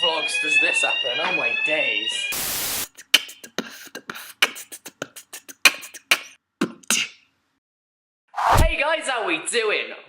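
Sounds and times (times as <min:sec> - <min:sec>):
beatboxing clicks and snare hits: 0:02.8 - 0:07.2.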